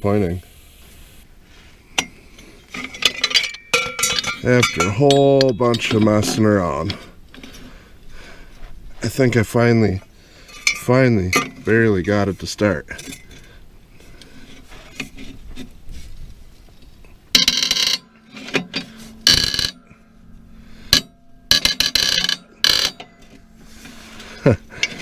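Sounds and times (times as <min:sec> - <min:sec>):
metal creaking and grinding: 0:01.8 - 0:25.0
wrench scraping: 0:02.0 - 0:07.8, 0:17.3 - 0:20.0, 0:20.6 - 0:25.0.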